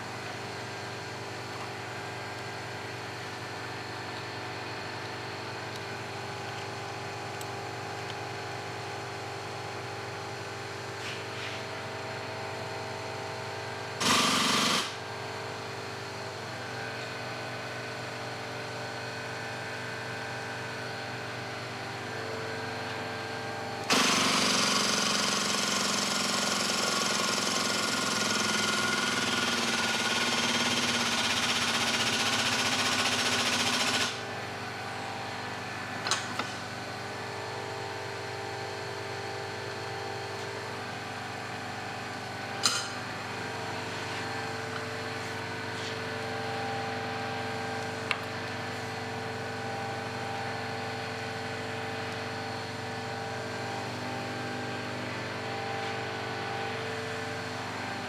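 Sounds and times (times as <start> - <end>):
steady mechanical hum: 0.0 - 58.0
air-driven hydraulic pump running: 14.0 - 15.0, 23.8 - 36.8.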